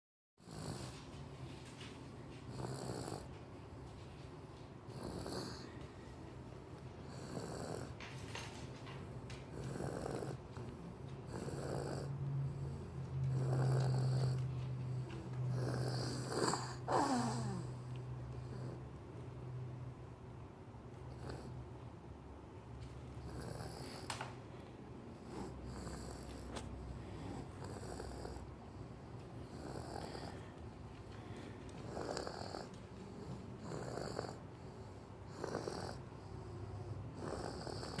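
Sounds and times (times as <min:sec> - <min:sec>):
steady low hum: 0:00.5 - 0:38.0
baby snoring: 0:02.5 - 0:03.3, 0:04.9 - 0:05.8, 0:07.0 - 0:08.1, 0:09.5 - 0:10.7, 0:11.3 - 0:18.8, 0:21.1 - 0:21.6, 0:23.2 - 0:24.2, 0:25.2 - 0:28.5, 0:29.4 - 0:30.5, 0:31.8 - 0:32.7, 0:33.6 - 0:34.4, 0:35.3 - 0:36.1, 0:36.8 - 0:38.0.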